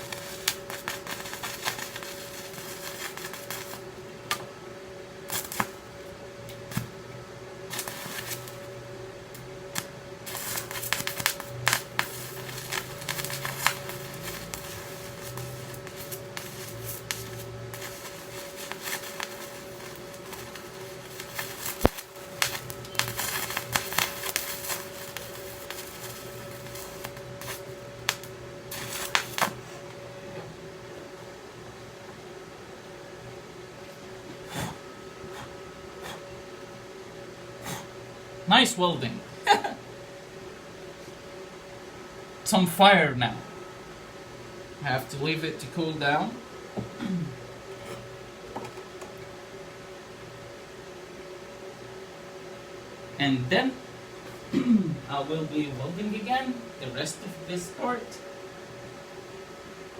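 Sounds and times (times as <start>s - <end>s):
welding arc crackling: 0.0s - 4.5s, 5.2s - 7.0s, 7.6s - 29.8s.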